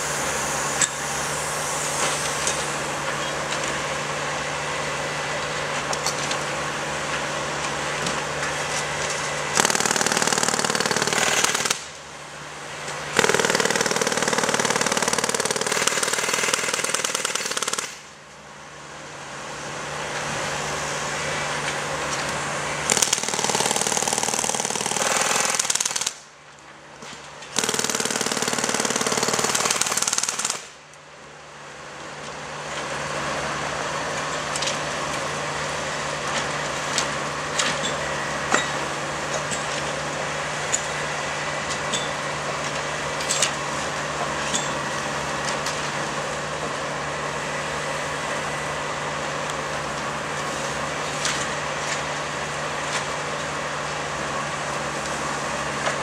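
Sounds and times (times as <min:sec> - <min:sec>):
jackhammer-like machine bursts: 0:09.5 - 0:12.0, 0:13.1 - 0:18.1, 0:22.8 - 0:26.2, 0:27.5 - 0:30.8.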